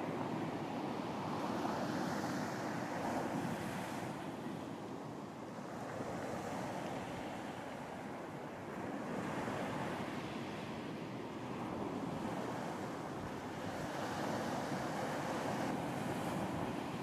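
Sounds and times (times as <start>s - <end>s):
ocean waves on a beach: 0.0s - 17.0s
wind: 0.0s - 17.0s.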